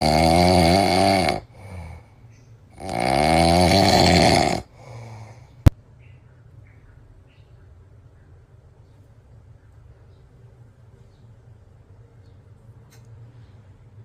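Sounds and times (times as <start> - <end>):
cat snoring: 0.0 - 2.0, 2.7 - 5.4.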